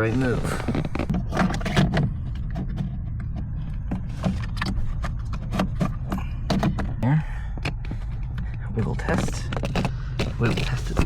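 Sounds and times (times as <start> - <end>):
low rumble: 0.0 - 11.0
plastic clicks and knocks: 0.3 - 11.0.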